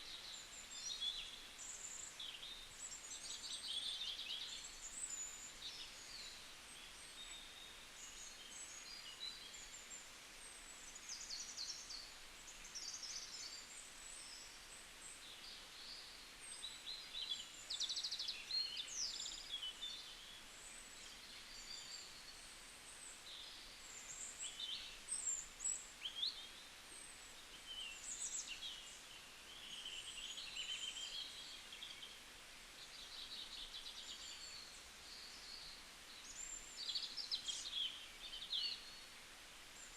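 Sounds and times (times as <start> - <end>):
faint steady hiss: 0.0 - 39.9
small birds chirping and trilling: 0.0 - 39.9.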